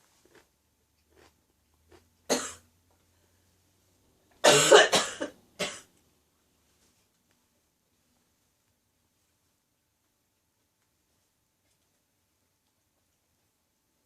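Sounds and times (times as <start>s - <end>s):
woman coughing: 4.4s - 5.9s.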